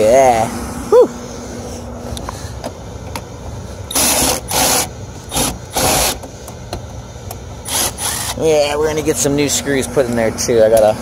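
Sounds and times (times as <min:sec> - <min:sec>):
gas heating unit humming: 0:00.0 - 0:11.0.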